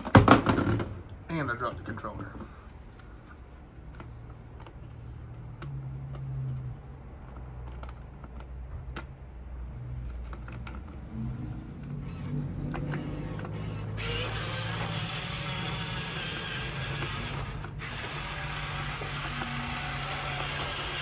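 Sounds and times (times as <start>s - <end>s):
rasping gear noise: 11.8s - 21.0s
toy truck motor humming: 12.0s - 21.0s.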